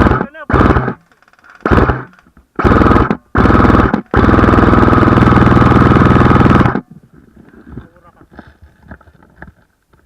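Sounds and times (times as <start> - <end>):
airsoft rifle firing full auto: 0.0 - 6.8.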